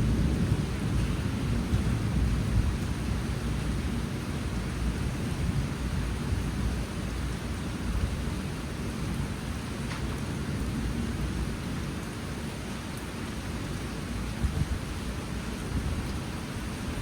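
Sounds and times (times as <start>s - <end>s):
heavy rain falling: 0.0s - 17.0s.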